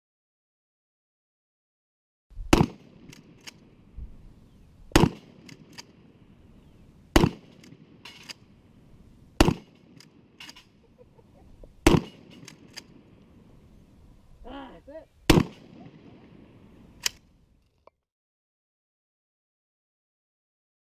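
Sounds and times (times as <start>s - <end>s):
shotgun shots: 2.5s - 3.8s, 4.9s - 6.1s, 7.1s - 8.5s, 9.4s - 10.7s, 11.8s - 13.2s, 15.3s - 17.2s.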